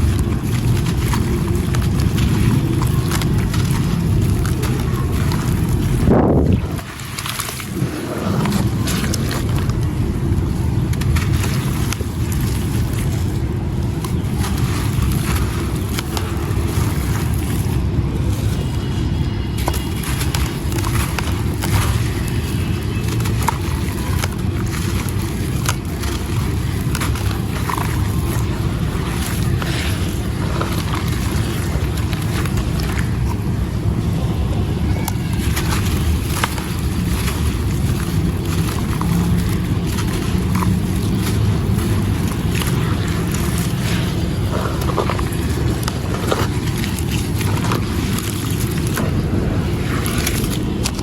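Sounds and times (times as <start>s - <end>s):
stone chunks crumbling in water: 0.0s - 51.0s.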